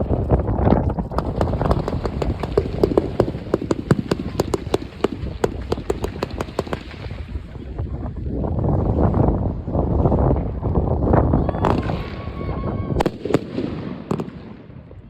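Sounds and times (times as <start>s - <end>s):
fireworks cracks and pops: 0.0s - 7.3s
wind on microphone: 0.0s - 13.5s
distant bangs rumble: 0.8s - 7.2s.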